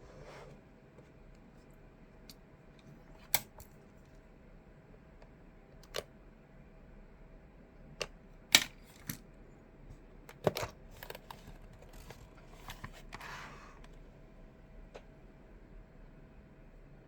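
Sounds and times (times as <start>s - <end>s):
plastic case handled: 10.3s - 13.4s.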